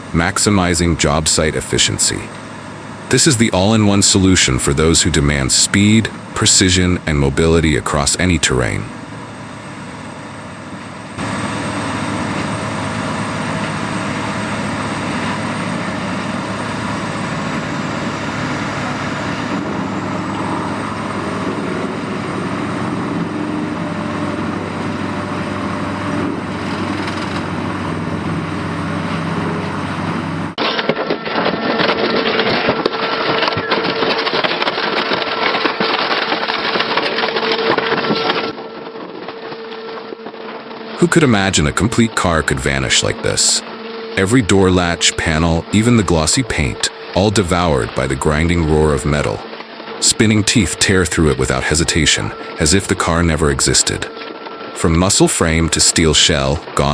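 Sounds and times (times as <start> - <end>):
machine grinding with a whine: 8.9 - 41.0.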